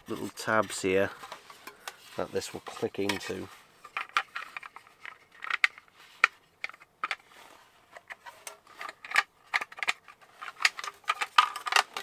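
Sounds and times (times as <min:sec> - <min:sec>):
plastic model parts clicking: 0:03.0 - 0:07.2, 0:08.5 - 0:12.0.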